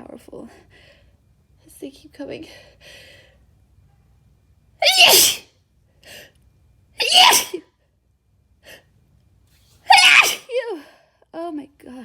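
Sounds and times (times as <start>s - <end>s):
person sneezing: 4.8s - 5.4s, 7.0s - 7.6s, 9.9s - 10.5s.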